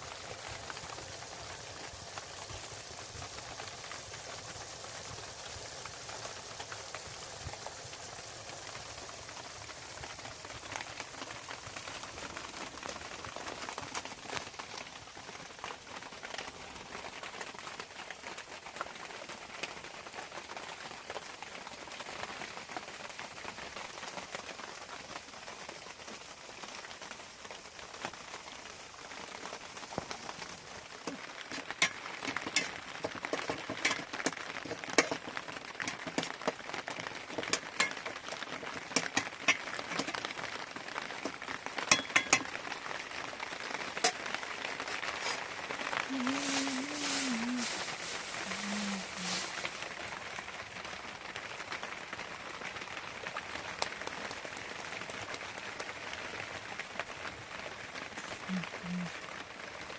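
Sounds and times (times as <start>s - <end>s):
rain drops ticking: 0.0s - 59.9s.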